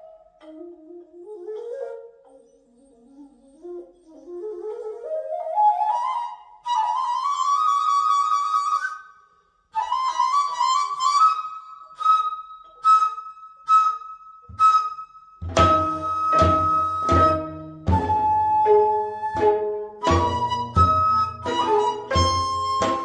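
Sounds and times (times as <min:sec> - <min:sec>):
bamboo flute playing: 0:00.0 - 0:23.0
deeper accompanying notes: 0:15.4 - 0:23.0.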